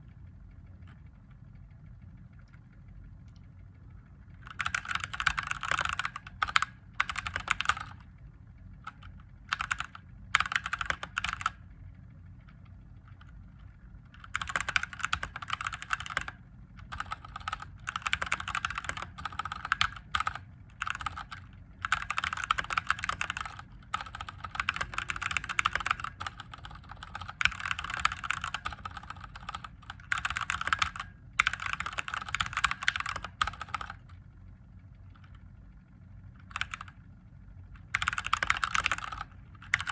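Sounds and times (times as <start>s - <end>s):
faint low hum: 0.0s - 39.9s
mechanical keyboard typing: 4.4s - 8.2s, 8.8s - 11.7s, 12.4s - 34.2s, 36.4s - 37.0s, 37.8s - 39.9s.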